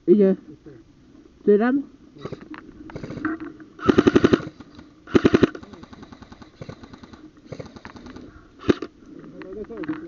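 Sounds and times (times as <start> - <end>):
airsoft gun firing bursts: 3.8 - 8.9
faint clicks: 4.6 - 10.0.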